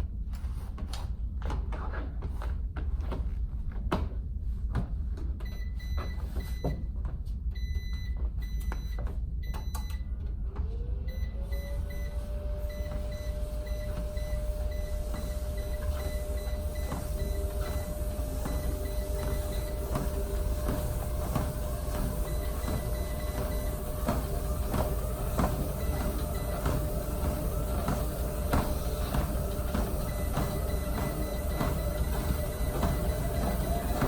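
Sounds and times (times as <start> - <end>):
treadmill motor hum: 0.0 - 34.0
motor whine rising in pitch: 10.7 - 34.0.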